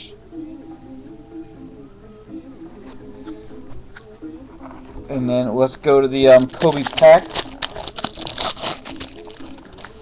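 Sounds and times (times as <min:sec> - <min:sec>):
soft background music: 0:00.0 - 0:10.0.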